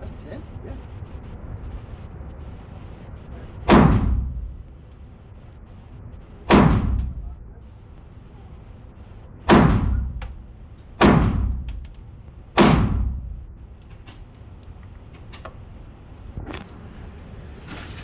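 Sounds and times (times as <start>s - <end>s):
handgun shots with echo: 3.7s - 4.5s, 6.5s - 7.3s, 9.5s - 10.4s, 11.0s - 12.0s, 12.6s - 13.4s.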